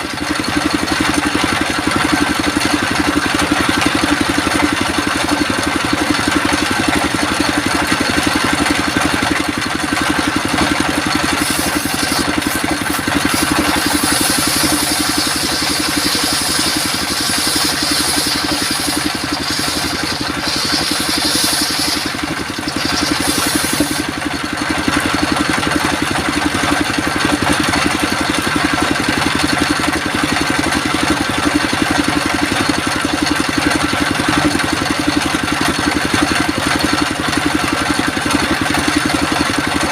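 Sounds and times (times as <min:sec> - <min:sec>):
circular sawmill running: 0:00.0 - 0:39.9
saw hissing through wood: 0:09.9 - 0:24.6.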